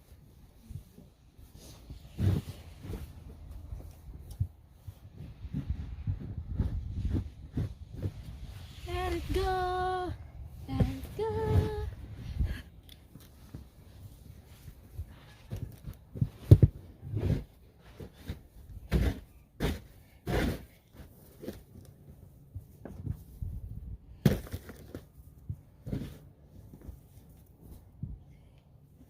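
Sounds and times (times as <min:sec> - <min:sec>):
snow shovel scraping snow: 0:01.6 - 0:03.2, 0:17.1 - 0:21.6.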